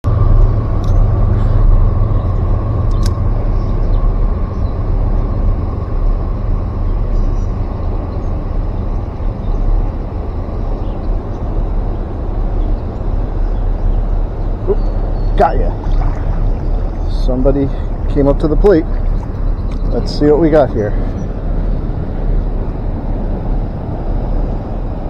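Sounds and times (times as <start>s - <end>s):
sharp clicks: 2.9s - 3.2s.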